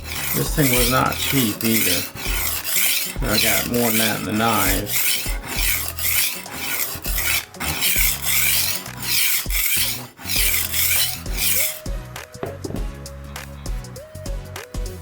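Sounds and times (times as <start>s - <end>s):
knife sharpener grinding strokes: 0.0s - 11.9s.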